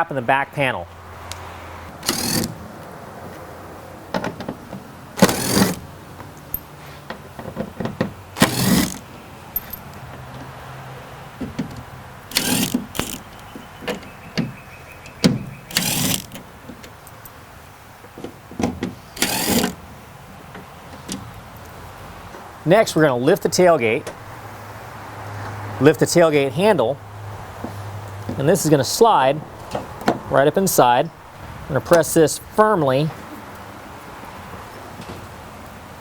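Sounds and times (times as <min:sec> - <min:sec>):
power driver spinning bolts: 0:02.0 - 0:02.6, 0:05.2 - 0:06.0, 0:08.4 - 0:09.8, 0:12.3 - 0:13.4, 0:15.4 - 0:16.5, 0:19.2 - 0:19.8
tools and parts clicking: 0:02.0 - 0:02.6, 0:05.2 - 0:06.7, 0:08.4 - 0:10.0, 0:12.3 - 0:14.0, 0:15.4 - 0:17.3, 0:19.2 - 0:19.8.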